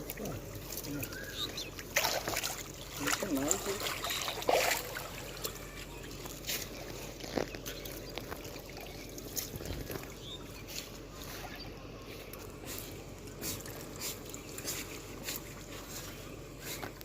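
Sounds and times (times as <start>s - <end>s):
knocks and splashes: 0.0s - 10.2s
water sloshing around boat: 0.0s - 17.0s.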